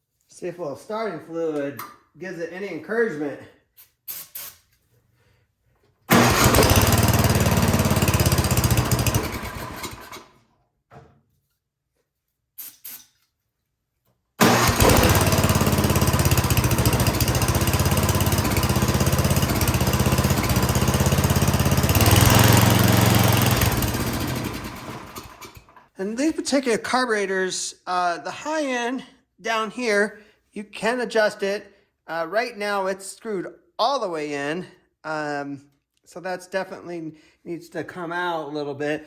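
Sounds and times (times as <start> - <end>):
snowblower engine running: 6.1 - 10.3, 14.4 - 25.7.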